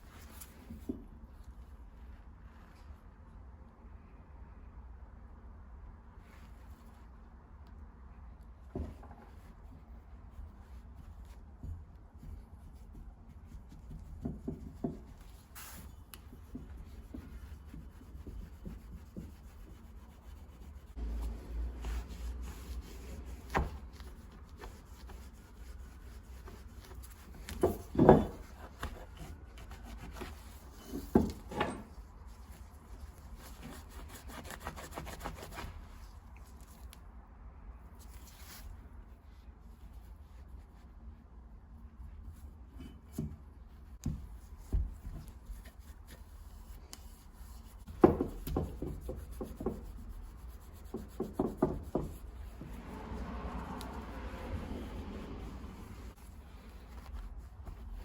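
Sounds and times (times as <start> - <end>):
parts knocking and clattering: 27.4 - 28.6, 30.9 - 32.0.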